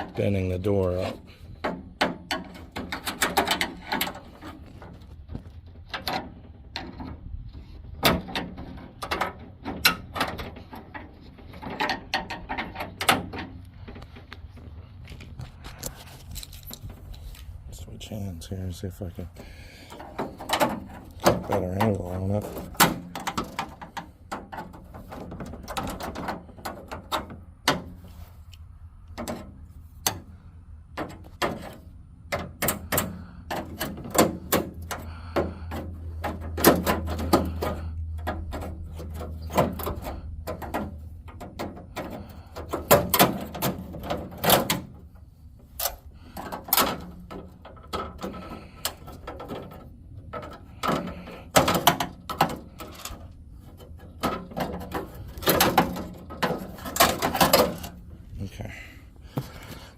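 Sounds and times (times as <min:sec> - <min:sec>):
scraping rattles: 0:00.0 - 0:59.9
clicks and knocks: 0:19.8 - 0:28.1, 0:45.7 - 0:58.1.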